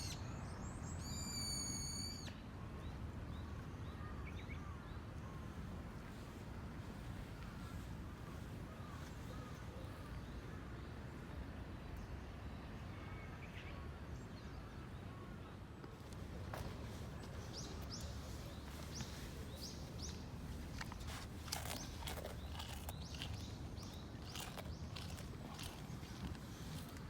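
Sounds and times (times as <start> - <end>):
bird chirping: 17.4 - 27.0.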